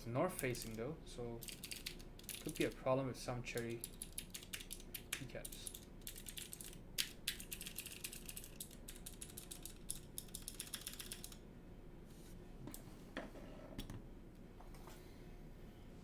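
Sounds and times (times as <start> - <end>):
mechanical keyboard clicking: 0.4 - 0.8, 1.4 - 2.8, 3.6 - 11.4.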